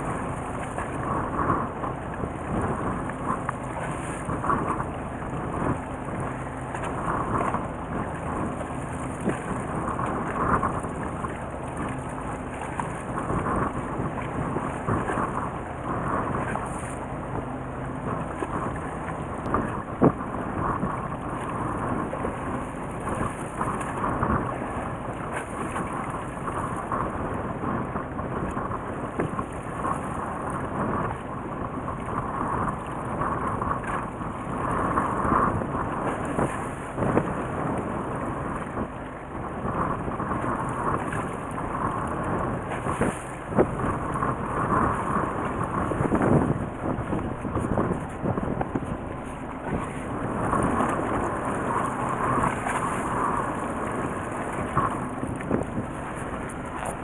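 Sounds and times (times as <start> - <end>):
wind: 0.0 - 57.0
water rushing: 32.0 - 57.0.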